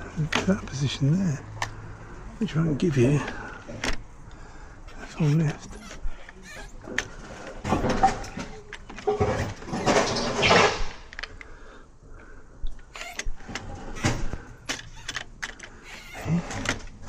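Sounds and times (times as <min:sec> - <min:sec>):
door lock mechanism clicking and rattling: 0:12.8 - 0:17.0.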